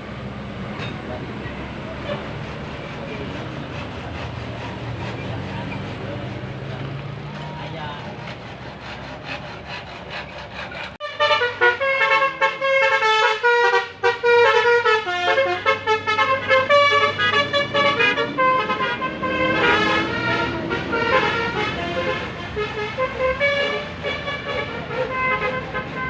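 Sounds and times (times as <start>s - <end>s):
bus musical air horn melody: 1.9s - 2.4s, 11.0s - 26.0s.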